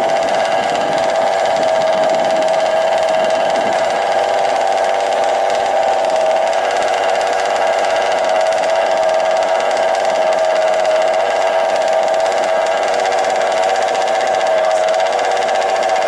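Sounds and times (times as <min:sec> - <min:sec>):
small two-stroke engines idling: 0:00.0 - 0:16.0.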